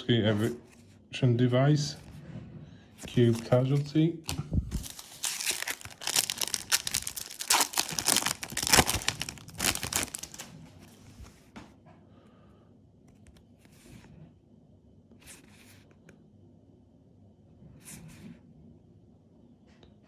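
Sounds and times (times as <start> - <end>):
foil wrapper tearing and crinkling: 3.1 - 10.6.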